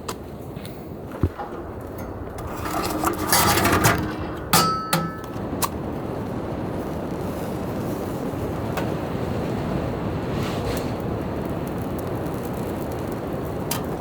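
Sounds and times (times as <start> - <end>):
steady rushing noise: 0.9 - 14.0
short clatter: 1.1 - 5.8.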